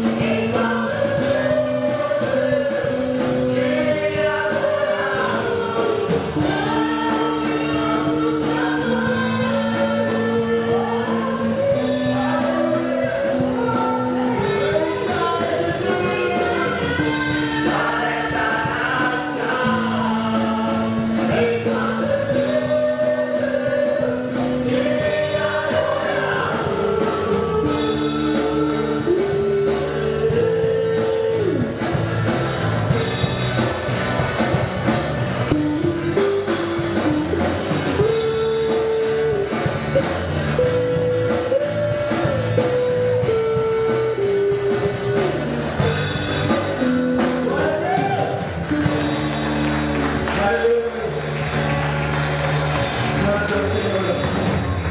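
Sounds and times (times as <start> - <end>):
vocal group singing gospel: 0.0 - 32.0
guitar and band accompaniment: 0.0 - 54.9.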